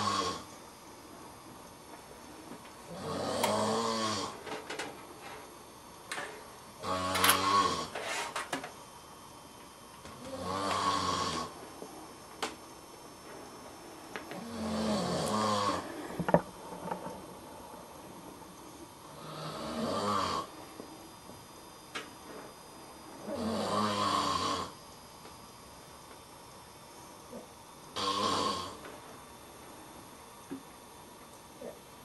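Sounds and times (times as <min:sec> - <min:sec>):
low buzzy snores: 0:00.0 - 0:00.6, 0:02.8 - 0:05.4, 0:06.8 - 0:08.5, 0:10.1 - 0:12.1, 0:13.4 - 0:21.1, 0:22.2 - 0:24.8, 0:27.3 - 0:29.0.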